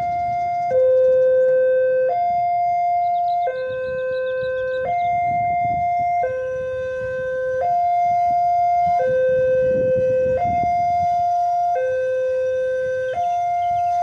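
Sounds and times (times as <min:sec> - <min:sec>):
two-tone electronic siren: 0:00.0 - 0:14.0.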